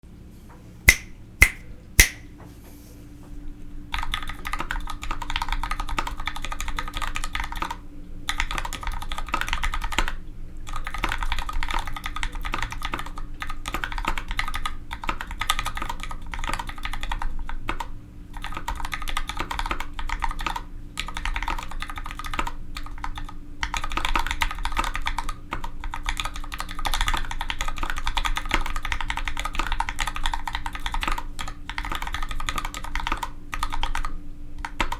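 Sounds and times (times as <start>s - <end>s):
loud sharp clicks: 0.9s - 2.3s
mechanical keyboard typing: 4.0s - 34.9s.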